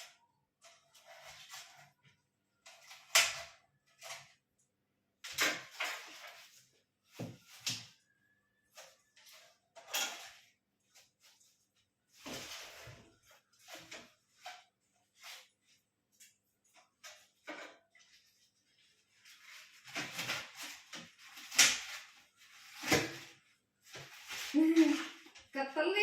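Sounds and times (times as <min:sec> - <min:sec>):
utensils and dishes clattering: 0:08.7 - 0:10.6.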